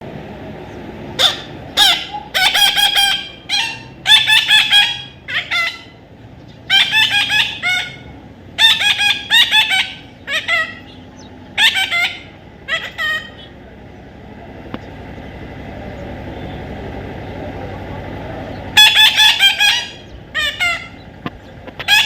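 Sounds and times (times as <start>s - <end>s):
parrot squawking: 1.2s - 6.0s, 6.7s - 13.6s, 18.7s - 22.0s.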